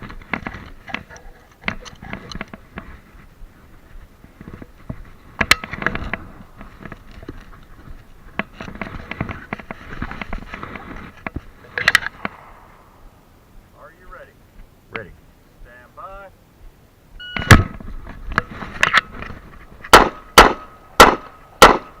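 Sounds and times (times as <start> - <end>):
gunshots on a shooting range: 19.9 - 22.0.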